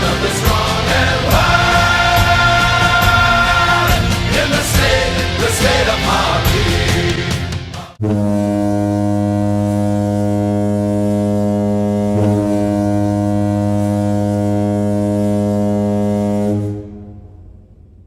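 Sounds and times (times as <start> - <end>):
hockey goal horn blast: 8.0 - 17.2.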